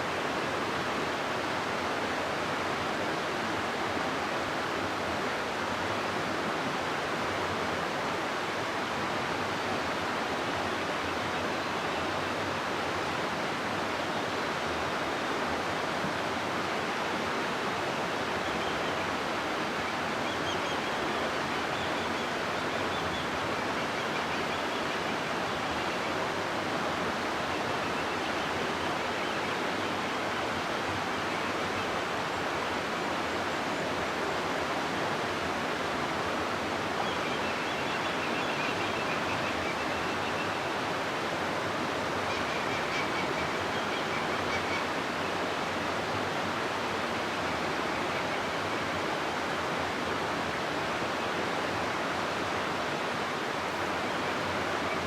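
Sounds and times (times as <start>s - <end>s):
river water rushing: 0.0s - 55.0s.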